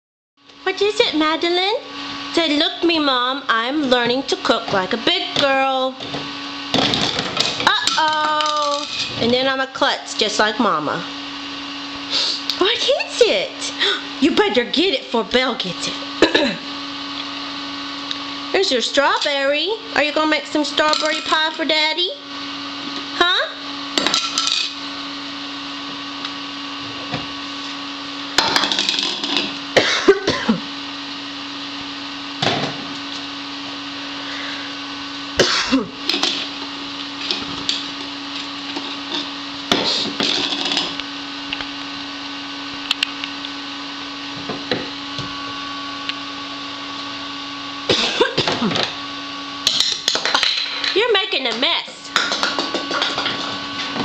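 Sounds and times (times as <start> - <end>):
toy kitchen items clattering: 6.8 - 9.2, 20.8 - 21.7.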